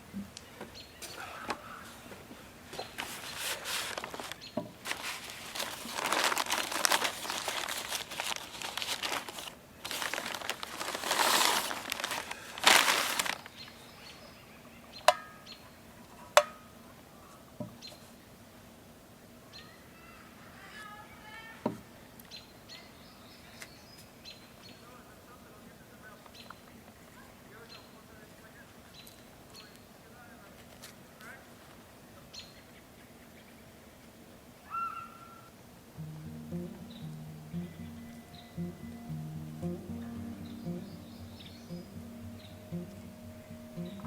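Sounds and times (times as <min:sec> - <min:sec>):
loud rustling: 0:03.0 - 0:13.5
small birds chirping faintly: 0:36.0 - 0:44.0.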